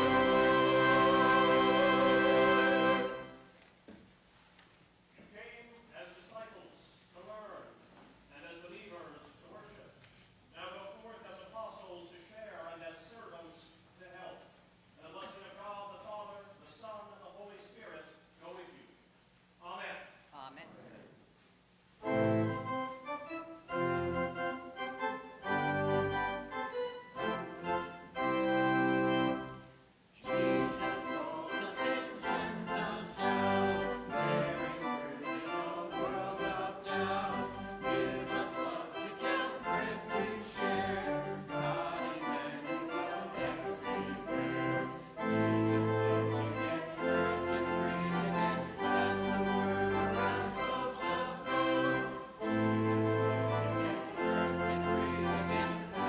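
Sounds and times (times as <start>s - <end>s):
church organ playing: 0.0s - 3.5s, 22.0s - 56.0s.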